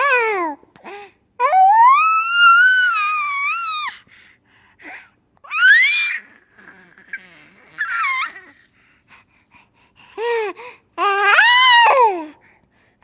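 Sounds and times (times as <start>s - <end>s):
baby squealing: 5.5s - 8.6s.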